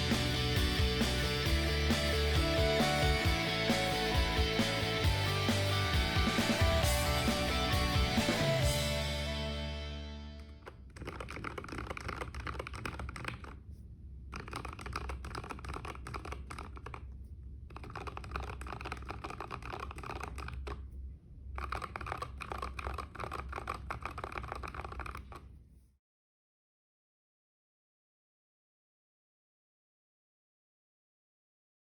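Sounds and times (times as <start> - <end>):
mechanical keyboard typing: 10.9 - 13.6, 14.3 - 17.1, 17.7 - 20.8, 21.6 - 25.4.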